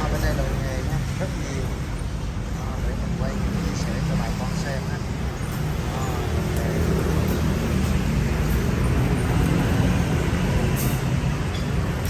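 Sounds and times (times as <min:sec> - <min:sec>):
low rumbling background noise: 0:00.0 - 0:12.0.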